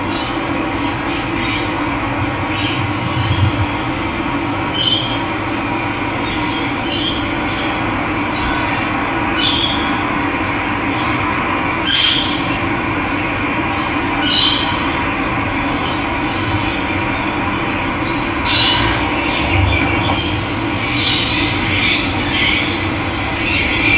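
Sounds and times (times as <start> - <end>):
bird calling: 4.6 - 7.2.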